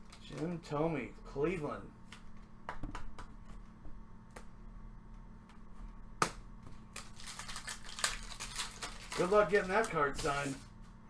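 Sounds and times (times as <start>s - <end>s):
crinkly rustling: 7.0s - 10.7s.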